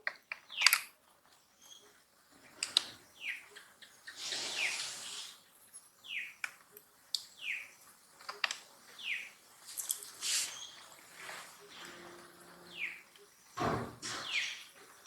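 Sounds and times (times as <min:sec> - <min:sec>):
sharp clicks: 0:00.0 - 0:00.9.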